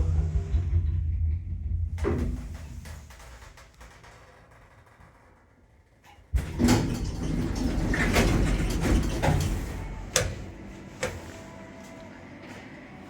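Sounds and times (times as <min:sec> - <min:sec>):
lift door gear rattling: 0:06.3 - 0:11.3
lift door clunk: 0:06.4 - 0:11.3.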